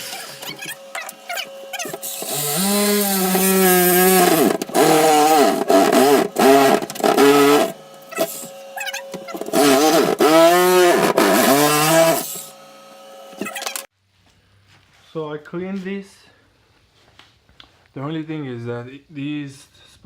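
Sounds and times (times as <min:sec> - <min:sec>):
electric saw cutting plastic pipe: 0:00.0 - 0:13.9.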